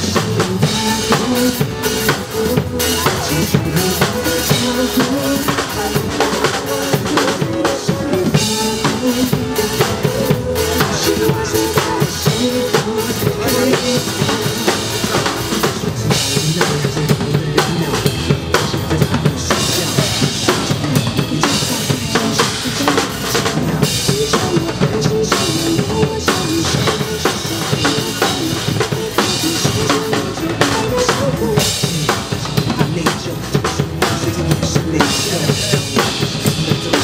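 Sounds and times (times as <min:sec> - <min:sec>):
drum kit playing a steady beat: 0:00.0 - 0:37.0
pop backing music: 0:00.0 - 0:37.0.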